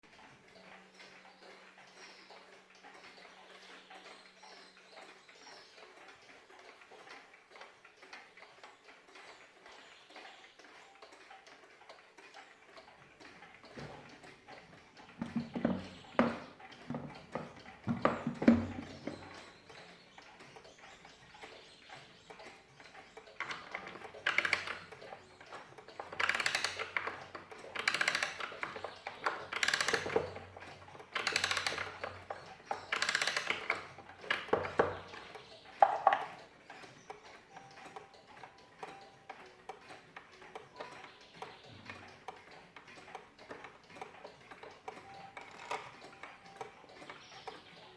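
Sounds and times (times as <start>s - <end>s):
alarm clock ticking: 0.0s - 47.9s
dense mechanical clicking: 0.1s - 47.9s
clicks and knocks: 13.2s - 20.8s, 23.3s - 38.1s.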